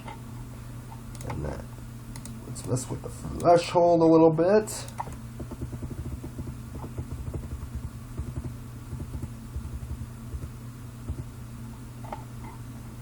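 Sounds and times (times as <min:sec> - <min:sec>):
low electrical hum: 0:00.0 - 0:13.0
computer mouse taps and clicks: 0:04.9 - 0:11.3.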